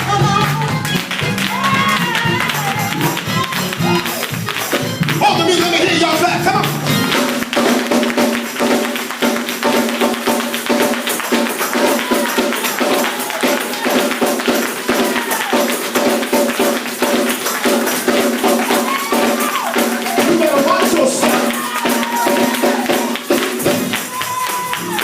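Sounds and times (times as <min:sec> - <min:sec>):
held musical chords: 0:00.0 - 0:07.8
congregation clapping in rhythm: 0:00.0 - 0:25.0
tambourine: 0:00.0 - 0:25.0.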